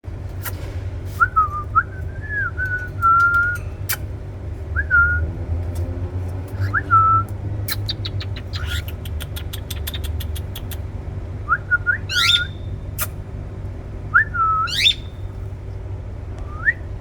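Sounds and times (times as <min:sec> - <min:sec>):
cockatiel clicks: 0:07.3 - 0:10.9
cockatiel whistling: 0:11.6 - 0:12.7, 0:14.2 - 0:15.2.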